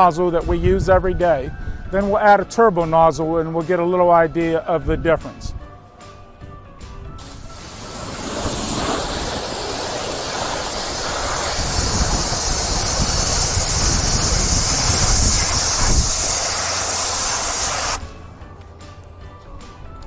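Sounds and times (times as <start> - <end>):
pressure washer jet hissing: 7.2 - 18.1.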